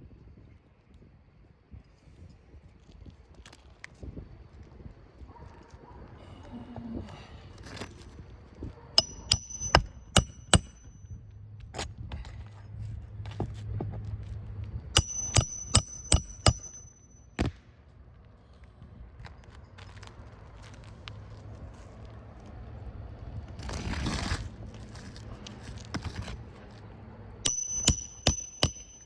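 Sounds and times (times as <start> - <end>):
hammer driving roofing nails: 9.0 - 11.0, 15.0 - 17.6, 27.5 - 29.0.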